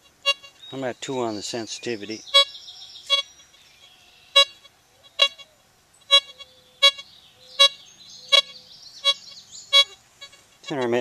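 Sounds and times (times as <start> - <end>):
metal detector beeps: 3.1 - 3.3, 6.1 - 7.0, 7.6 - 10.0.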